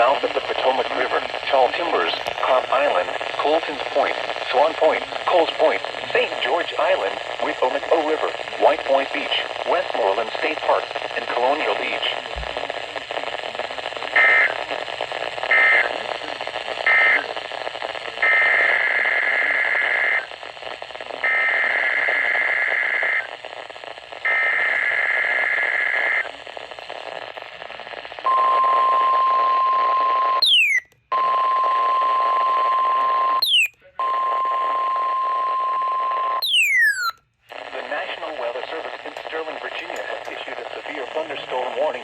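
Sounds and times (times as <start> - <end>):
radio beeps: 0.0 - 20.3, 21.1 - 23.4, 24.2 - 42.0
radio static hiss: 0.0 - 30.8, 33.3 - 33.7, 36.4 - 42.0
quick falling chirp: 30.4 - 30.8, 33.4 - 33.7, 36.4 - 37.1
steady warning alarm tone: 30.4 - 30.8, 33.4 - 33.7, 36.4 - 37.2.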